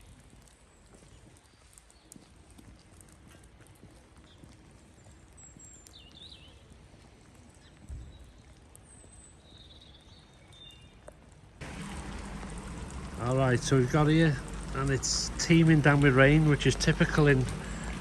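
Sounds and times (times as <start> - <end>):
heavy rain: 11.6 - 18.0.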